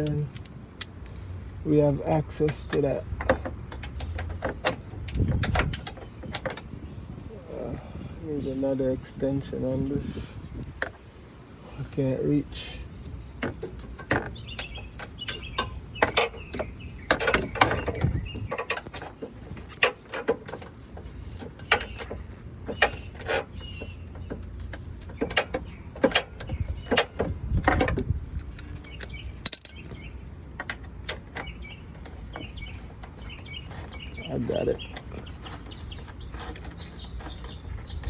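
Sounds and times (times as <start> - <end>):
metal tools clinking: 24.7 - 27.2, 27.8 - 30.1.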